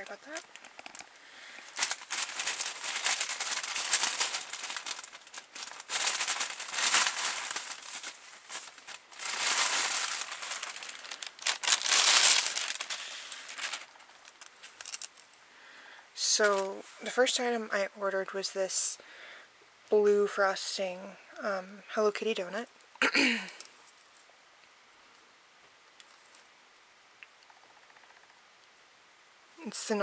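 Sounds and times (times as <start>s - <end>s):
packaging crinkling and rustling: 0.0s - 15.4s.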